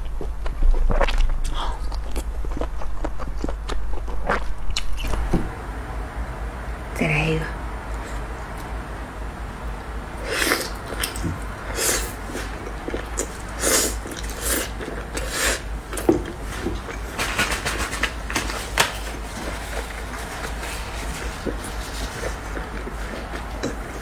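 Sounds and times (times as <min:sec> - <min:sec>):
wet chewing and mouth noise: 0:00.0 - 0:05.4, 0:10.2 - 0:24.0
steady low hum: 0:00.0 - 0:24.0.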